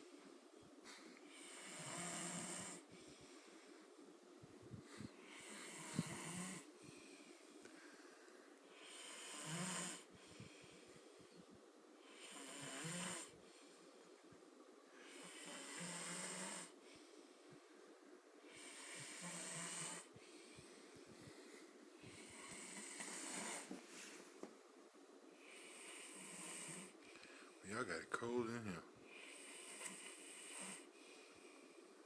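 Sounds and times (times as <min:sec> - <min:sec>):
man snoring: 0:01.4 - 0:02.8, 0:05.3 - 0:06.7, 0:08.8 - 0:10.1, 0:12.1 - 0:13.3, 0:15.0 - 0:16.8, 0:18.5 - 0:20.1, 0:25.5 - 0:27.0, 0:29.2 - 0:30.9.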